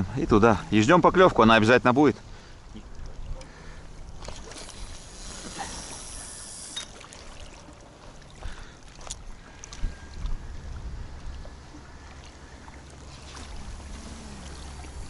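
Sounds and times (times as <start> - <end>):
high hiss: 4.8 - 6.9
wind buffeting microphone: 9.2 - 12.0.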